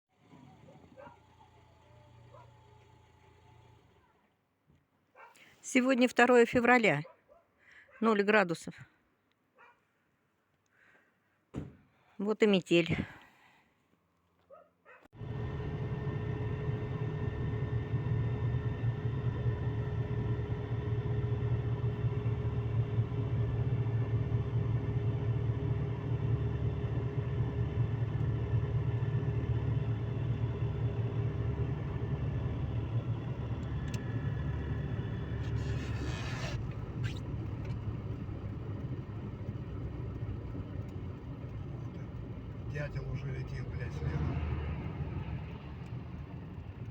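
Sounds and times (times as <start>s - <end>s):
car engine and road rumble: 0.1s - 4.8s, 15.1s - 46.9s.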